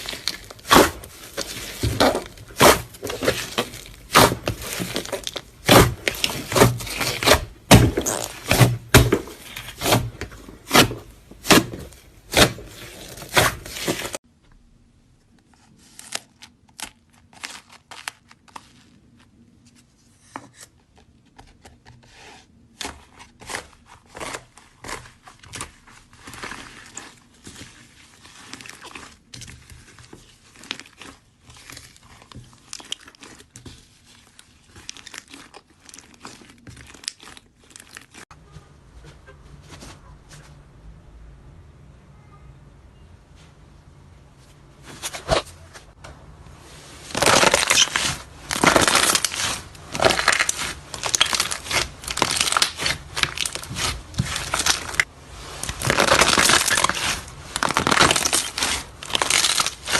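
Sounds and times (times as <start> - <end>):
slime crackling and popping: 0.0 - 10.1, 25.4 - 38.3, 47.1 - 59.9.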